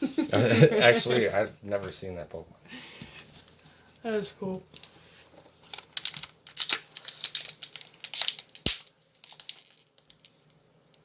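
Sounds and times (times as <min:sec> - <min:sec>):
foil wrapper crinkling: 0:04.8 - 0:10.6.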